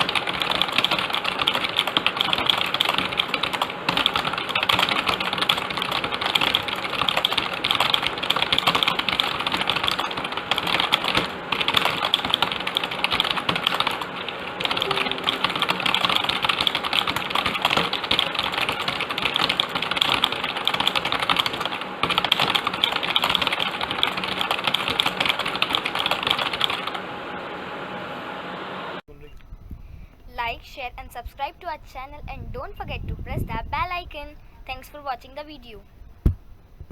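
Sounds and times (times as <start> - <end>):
typing on a computer keyboard: 0.0 - 26.9.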